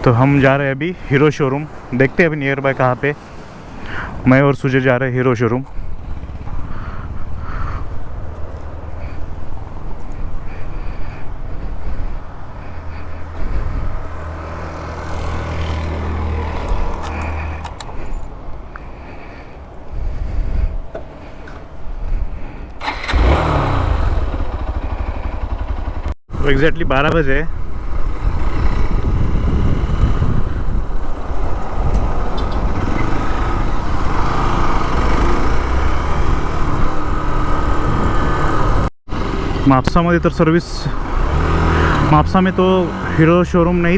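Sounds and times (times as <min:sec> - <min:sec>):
vehicle engine humming: 0:01.1 - 0:43.9
wind rumbling on microphone: 0:05.7 - 0:38.9.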